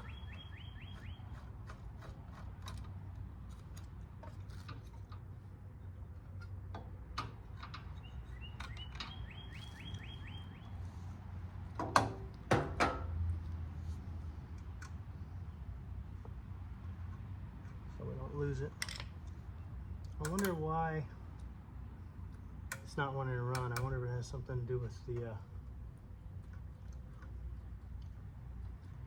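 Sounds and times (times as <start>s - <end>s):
bird trilling: 0.0s - 1.3s, 8.0s - 10.7s.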